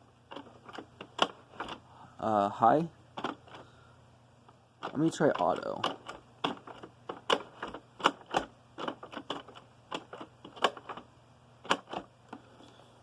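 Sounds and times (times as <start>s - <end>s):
plastic clicks and knocks: 3.2s - 3.6s, 4.8s - 11.0s.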